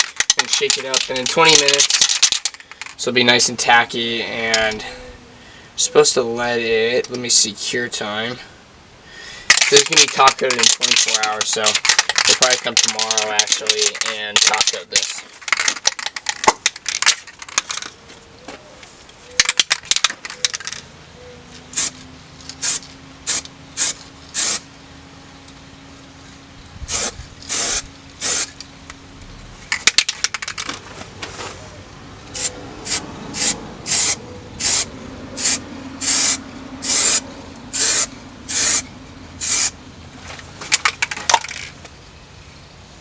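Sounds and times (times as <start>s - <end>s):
spray can hissing bursts: 21.7s - 22.0s, 22.6s - 24.6s, 26.9s - 28.6s, 32.3s - 39.8s.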